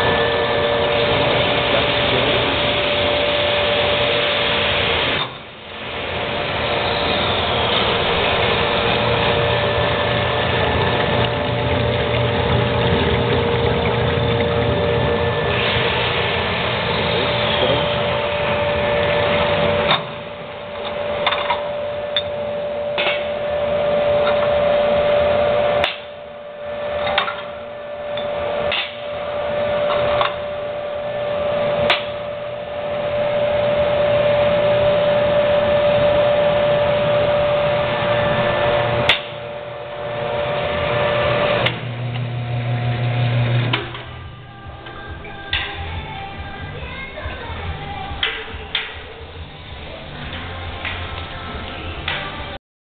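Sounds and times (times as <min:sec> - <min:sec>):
pump humming: 0:00.0 - 0:52.6.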